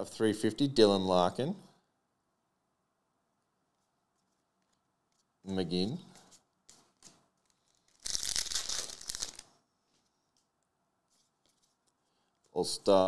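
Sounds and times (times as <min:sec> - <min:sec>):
card pack wrapper tearing: 0:06.9 - 0:09.5.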